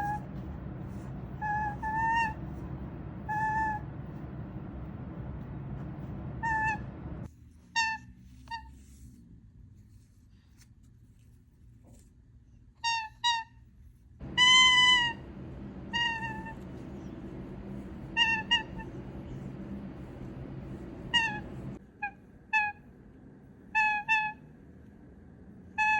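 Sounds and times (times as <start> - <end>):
toucan honking: 0.0 - 4.0, 5.3 - 7.3, 14.2 - 21.8
steady hiss: 14.2 - 21.8.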